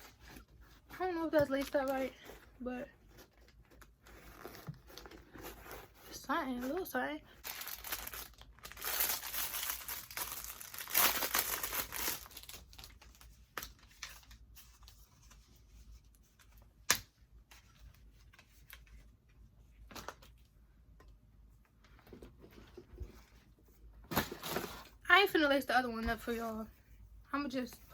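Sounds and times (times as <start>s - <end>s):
packaging crinkling and rustling: 3.0s - 15.4s.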